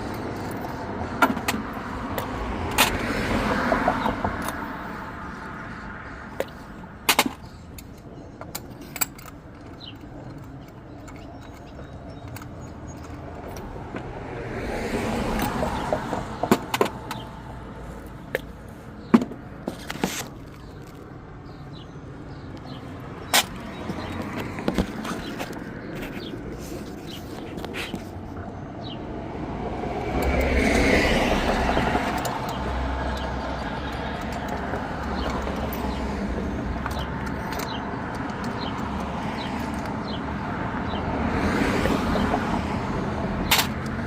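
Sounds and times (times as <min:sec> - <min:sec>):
sharp clicks and knocks: 0:00.0 - 0:03.0, 0:06.4 - 0:14.1, 0:15.3 - 0:17.3, 0:22.5 - 0:28.5, 0:31.4 - 0:40.2
vehicle passing by: 0:00.0 - 0:06.4, 0:12.3 - 0:18.9, 0:23.0 - 0:44.0.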